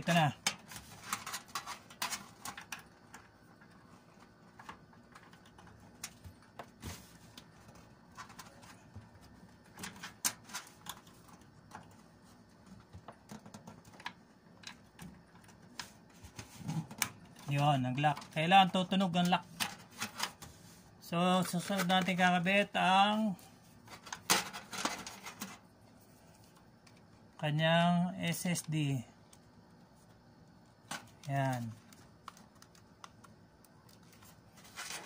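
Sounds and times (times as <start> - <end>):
computer parts clicking and knocking: 9.6 - 12.0, 12.6 - 15.8, 23.9 - 25.6.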